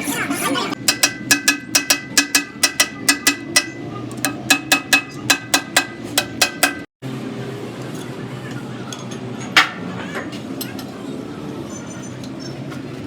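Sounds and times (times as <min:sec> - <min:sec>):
hammer striking steel: 0:00.8 - 0:06.9.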